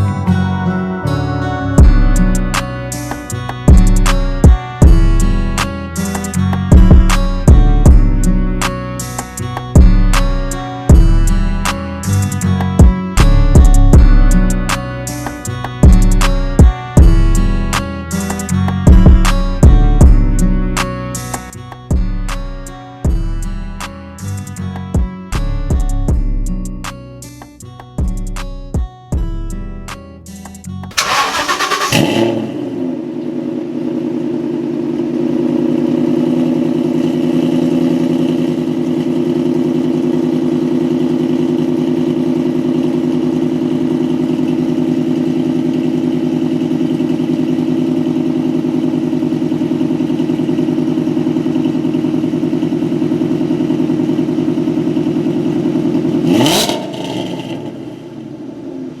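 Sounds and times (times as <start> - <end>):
car engine revving: 30.9 - 59.0.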